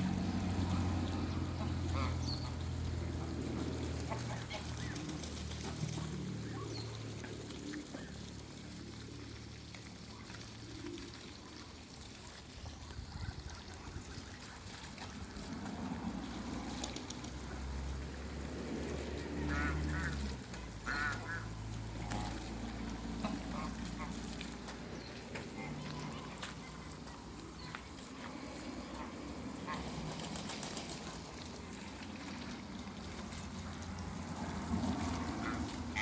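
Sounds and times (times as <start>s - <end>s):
waterfowl honking: 0.7s - 5.1s, 19.2s - 24.5s, 28.9s - 30.1s, 34.4s - 36.0s.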